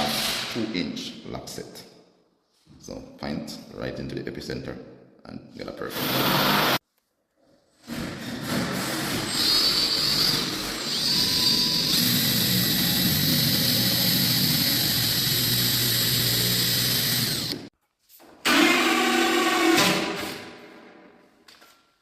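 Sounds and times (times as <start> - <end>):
power drill whining: 9.3 - 17.7, 18.5 - 20.3.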